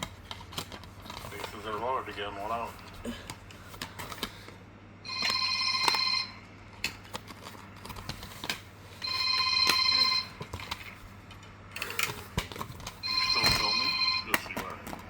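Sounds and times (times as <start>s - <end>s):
telephone electronic trilled ring: 5.0s - 6.4s, 9.0s - 10.4s, 13.0s - 14.4s.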